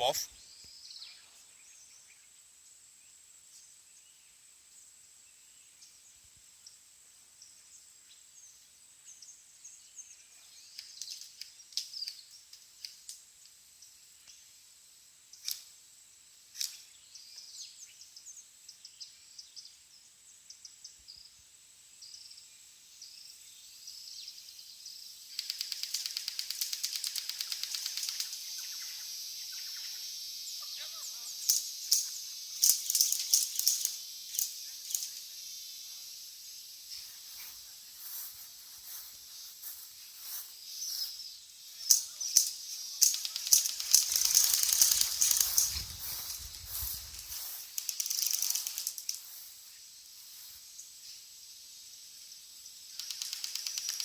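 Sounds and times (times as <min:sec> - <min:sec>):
sharp clicks: 0:25.3 - 0:28.4, 0:41.9 - 0:45.9, 0:47.1 - 0:49.2, 0:53.0 - 0:54.0
high-pitched insect drone: 0:25.3 - 0:54.0
bird chirps: 0:36.8 - 0:51.3.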